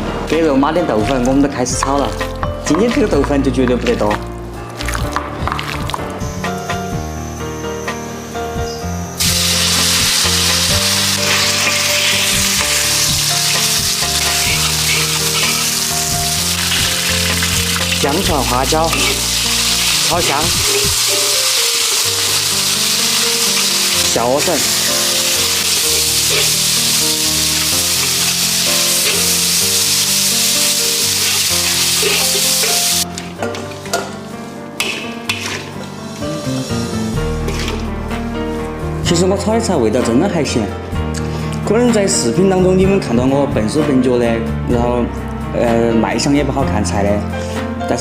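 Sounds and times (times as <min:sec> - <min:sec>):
background music: 0:00.0 - 0:48.0
meat sizzling in hot oil: 0:09.2 - 0:33.1, 0:34.8 - 0:37.9.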